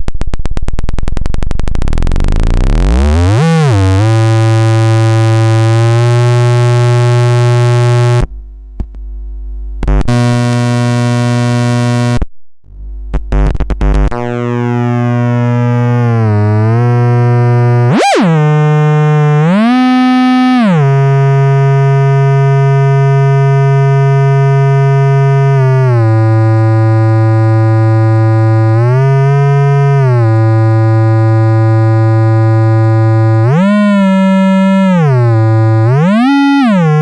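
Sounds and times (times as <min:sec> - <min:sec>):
crackles: 0:00.0 - 0:05.0, 0:13.1 - 0:19.3
low hum: 0:00.0 - 0:37.0
buzzy synth tone: 0:01.0 - 0:08.3, 0:09.8 - 0:37.0.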